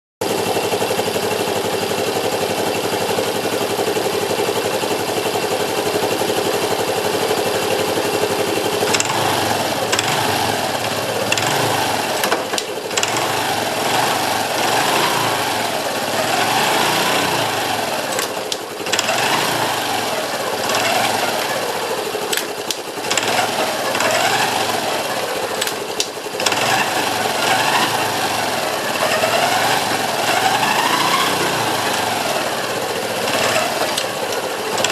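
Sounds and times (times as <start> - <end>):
abnormal mechanical engine noise: 0.2 - 34.9
motorcycle engine idling and revving: 0.2 - 34.9.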